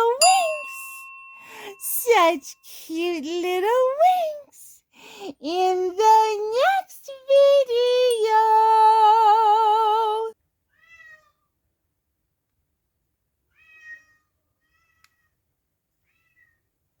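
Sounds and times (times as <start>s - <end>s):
faint cat meows: 10.7s - 11.5s, 13.5s - 15.4s, 16.0s - 16.7s.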